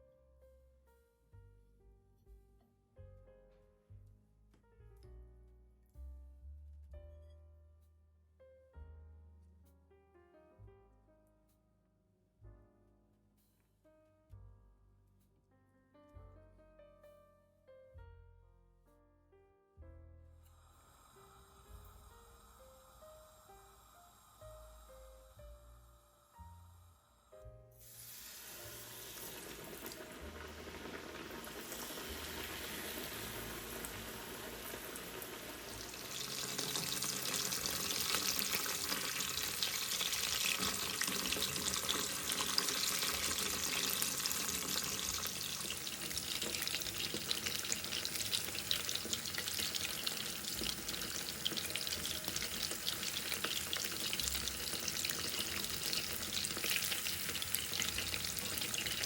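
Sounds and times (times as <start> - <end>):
mushrooms frying in hot oil: 27.8 - 59.0.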